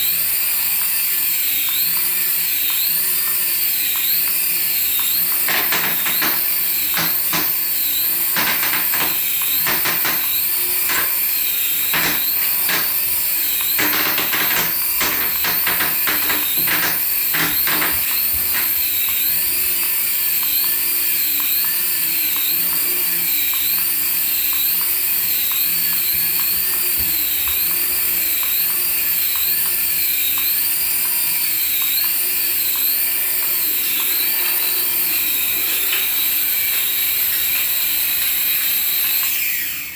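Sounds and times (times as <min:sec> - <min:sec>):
toy electric motor whine: 0:00.0 - 0:39.9
clicks and rattles: 0:05.0 - 0:19.2.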